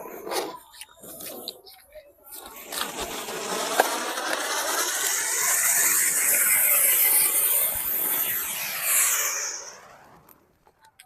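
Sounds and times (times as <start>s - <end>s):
fountain firework hissing: 2.4s - 10.6s.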